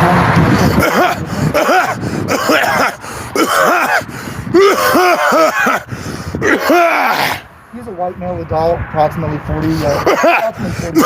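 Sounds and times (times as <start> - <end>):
man coughing: 0.7 - 7.4, 9.9 - 11.0.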